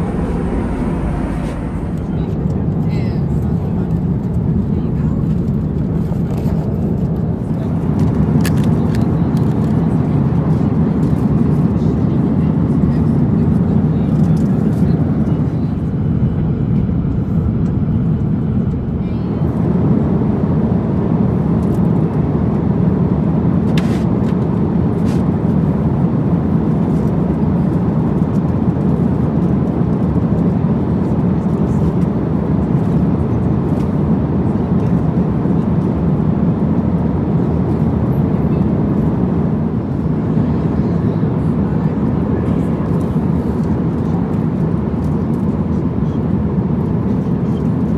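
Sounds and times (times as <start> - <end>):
airliner cabin engine rumble: 0.0 - 47.9.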